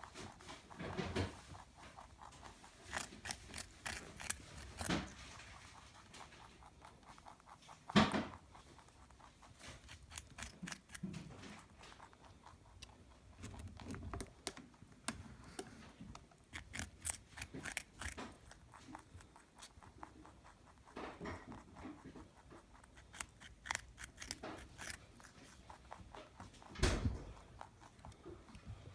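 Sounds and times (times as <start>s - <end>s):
rabbit crunching carrot: 0.0s - 28.9s
loud thump: 26.8s - 27.4s.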